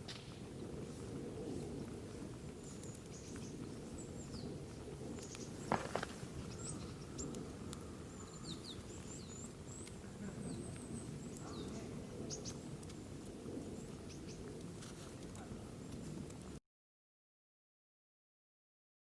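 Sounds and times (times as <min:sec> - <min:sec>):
low background rumble: 0:00.0 - 0:16.6
small birds chirping: 0:01.3 - 0:14.6
faint clicks: 0:05.2 - 0:07.8.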